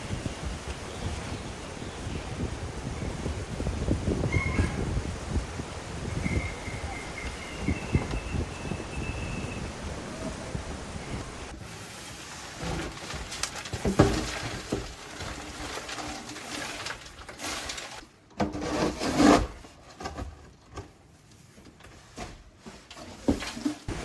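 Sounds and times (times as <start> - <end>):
rubbing sounds: 11.6 - 24.0.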